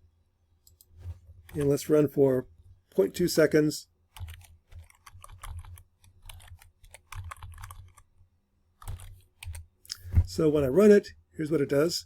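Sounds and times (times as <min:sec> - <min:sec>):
computer keyboard typing: 0:04.2 - 0:08.1, 0:08.8 - 0:09.7.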